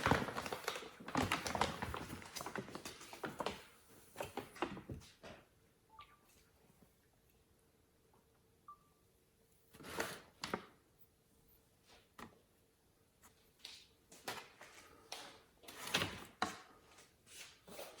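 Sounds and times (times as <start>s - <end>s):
bag rustling and crinkling: 0.0s - 3.6s.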